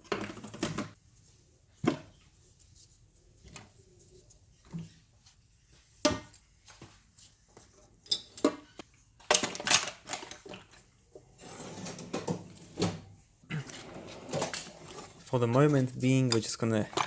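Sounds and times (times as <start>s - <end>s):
shuffling and rustling: 0.3s - 8.0s, 12.0s - 17.0s
metal tools clattering in drawer: 9.3s - 10.8s, 13.6s - 17.0s.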